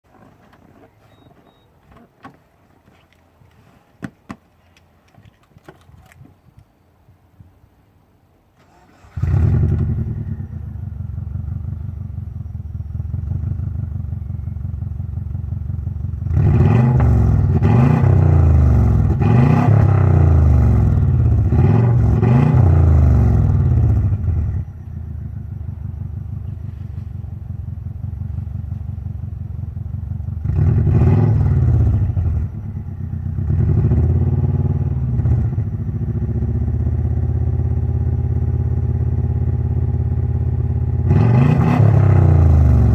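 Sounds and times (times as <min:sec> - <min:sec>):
car engine idling and revving: 0:08.7 - 0:42.9.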